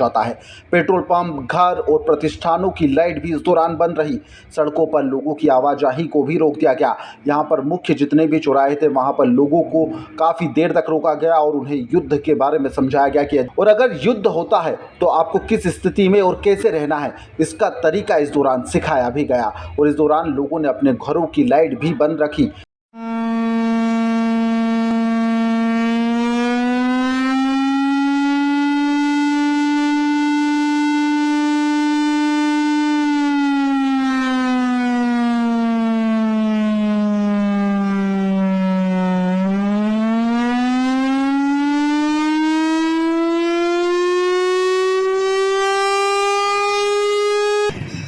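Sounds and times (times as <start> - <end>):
air-raid siren wailing: 23.0 - 47.8.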